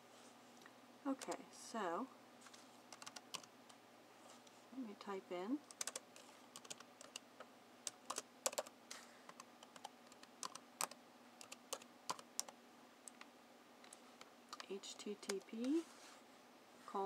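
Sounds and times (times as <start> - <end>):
typing on computer keyboard: 2.9 - 3.5, 5.7 - 7.2, 7.8 - 8.7, 9.3 - 15.6.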